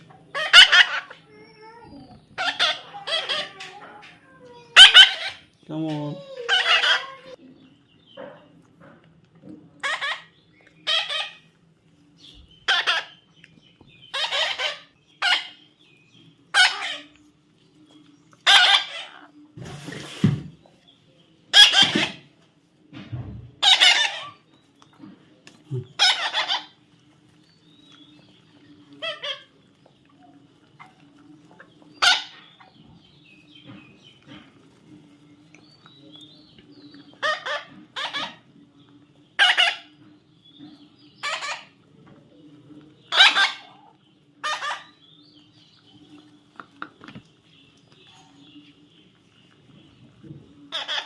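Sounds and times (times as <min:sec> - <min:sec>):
parrot squawking: 0:00.1 - 0:01.8, 0:02.4 - 0:05.5, 0:06.1 - 0:07.4, 0:09.8 - 0:11.5, 0:12.6 - 0:13.2, 0:14.1 - 0:15.6, 0:16.5 - 0:17.1, 0:18.4 - 0:19.3, 0:21.5 - 0:22.2, 0:23.6 - 0:24.4, 0:26.0 - 0:26.8, 0:29.0 - 0:29.5, 0:31.9 - 0:32.8, 0:37.2 - 0:38.5, 0:39.4 - 0:40.0, 0:41.2 - 0:41.8, 0:43.1 - 0:45.0, 0:50.7 - 0:51.0.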